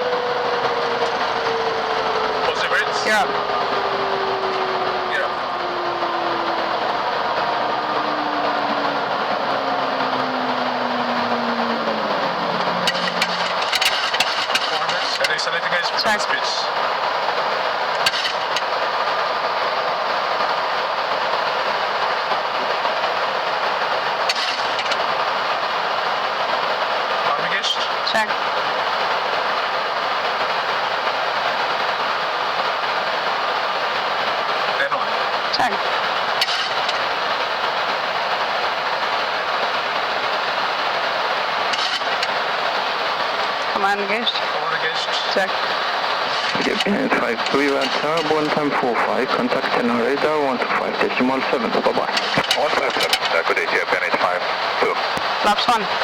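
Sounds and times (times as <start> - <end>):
airflow rushing: 0.0 - 15.2
airflow and engine noise: 0.0 - 56.0.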